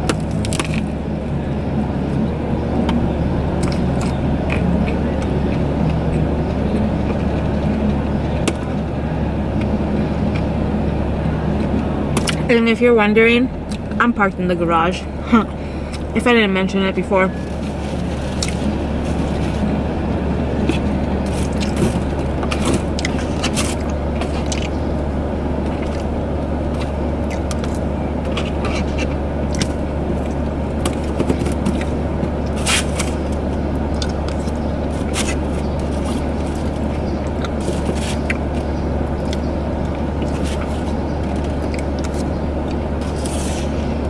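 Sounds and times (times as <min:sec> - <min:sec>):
eating clicks and scrapes: 0:00.0 - 0:00.9, 0:03.6 - 0:08.8, 0:17.3 - 0:44.0
low hum inside car: 0:00.0 - 0:44.0.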